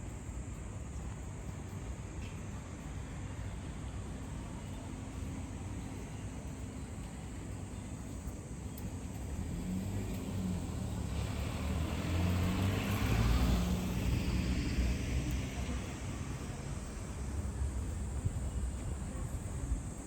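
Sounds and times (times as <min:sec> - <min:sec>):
outdoor background noise: 0:00.0 - 0:20.0
vehicle engine hum passing: 0:08.9 - 0:19.8.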